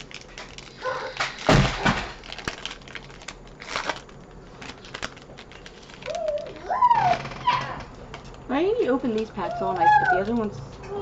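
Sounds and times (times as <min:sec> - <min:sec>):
foil wrapper crinkling: 0:00.0 - 0:08.3.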